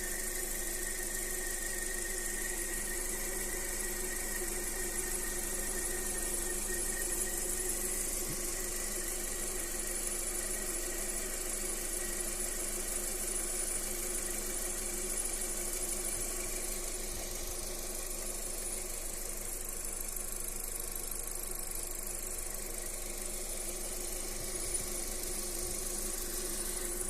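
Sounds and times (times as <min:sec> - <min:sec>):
car engine idling: 0:00.0 - 0:27.0.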